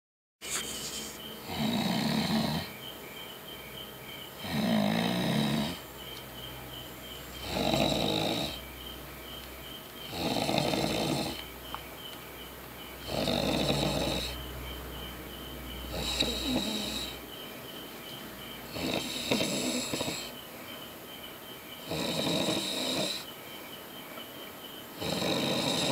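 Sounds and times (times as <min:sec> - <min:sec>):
man snoring: 0:00.4 - 0:02.7, 0:04.4 - 0:05.8, 0:07.4 - 0:08.6, 0:10.1 - 0:11.4, 0:13.0 - 0:14.4, 0:15.9 - 0:17.2, 0:18.7 - 0:20.4, 0:21.8 - 0:23.3, 0:25.0 - 0:25.9.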